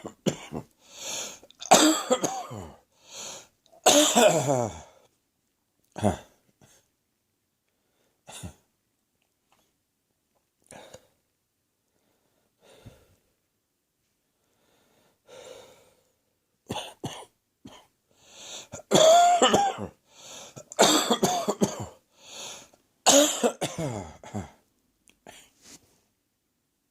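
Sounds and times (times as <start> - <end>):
person coughing: 0.0 - 0.7, 1.6 - 2.8, 3.8 - 4.9, 6.0 - 6.4, 16.7 - 17.9, 18.7 - 20.0, 20.6 - 22.0, 23.1 - 24.6.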